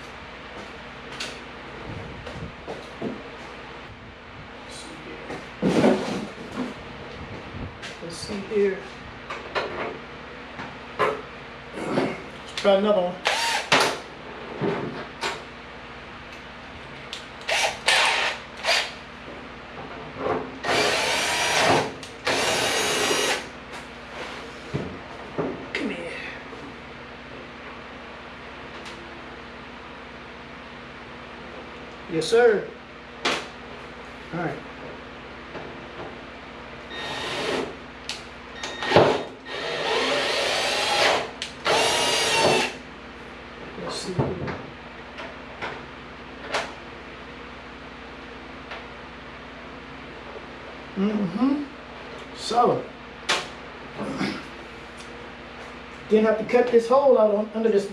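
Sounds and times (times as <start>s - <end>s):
power drill running: 13.2s - 13.8s, 17.4s - 19.0s, 20.6s - 23.5s, 36.9s - 37.7s, 38.6s - 42.8s.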